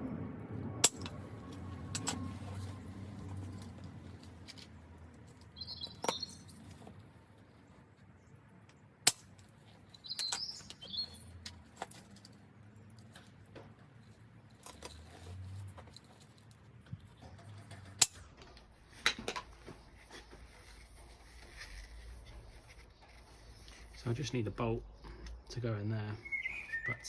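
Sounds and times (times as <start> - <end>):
small birds chirping: 5.3 - 8.4, 9.6 - 12.2, 21.5 - 27.0.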